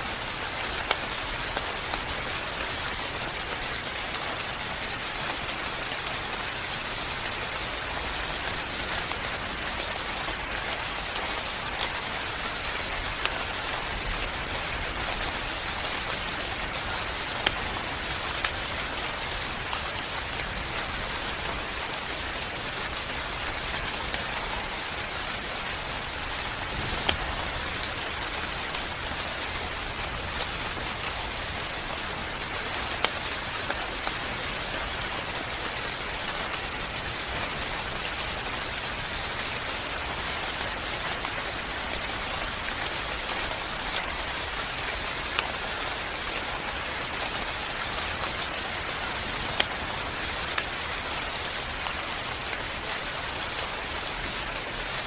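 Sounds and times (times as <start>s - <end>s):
steady rain falling: 0.0s - 55.0s
rain drop ticks: 0.1s - 22.1s, 22.8s - 55.0s.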